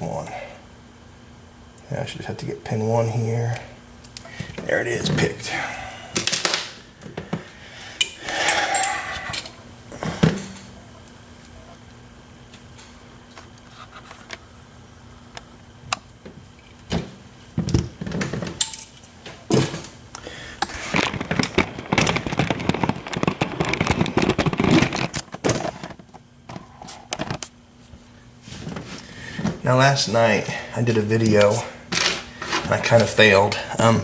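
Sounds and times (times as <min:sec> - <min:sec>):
metal tools clicking and clattering: 0:08.0 - 0:09.6, 0:18.6 - 0:19.0.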